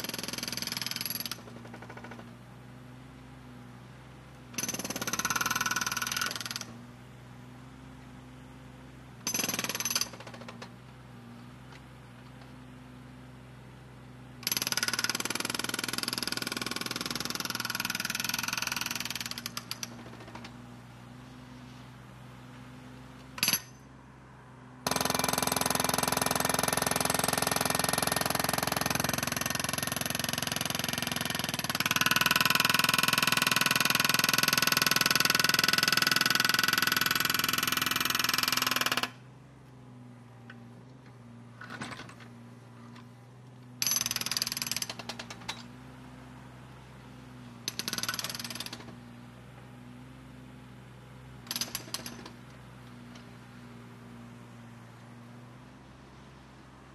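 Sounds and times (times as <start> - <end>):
jackhammer breaking: 0.0 - 2.3, 4.6 - 6.7, 9.2 - 10.7, 14.4 - 20.5, 23.4 - 23.8, 24.9 - 39.2, 43.8 - 45.7, 47.7 - 49.0, 51.5 - 52.4.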